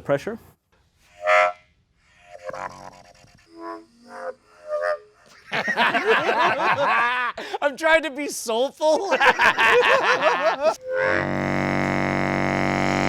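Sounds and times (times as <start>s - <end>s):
war horn toots and blasts: 1.1s - 1.7s, 10.8s - 13.0s.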